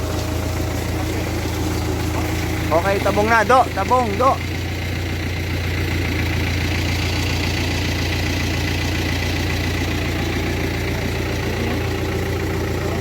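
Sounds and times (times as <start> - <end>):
tractor engine idling: 0.0 - 13.0.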